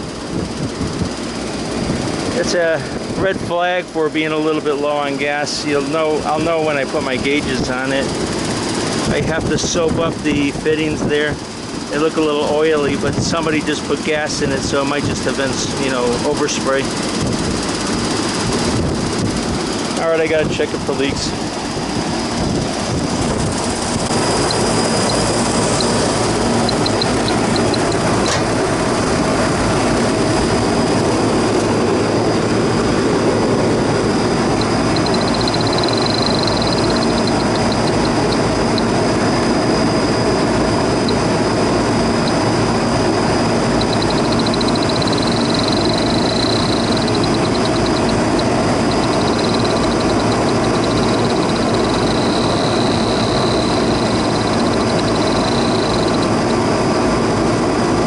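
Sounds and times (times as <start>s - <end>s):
air conditioning units humming: 0.0s - 58.0s
high rapid ticking: 5.8s - 56.6s.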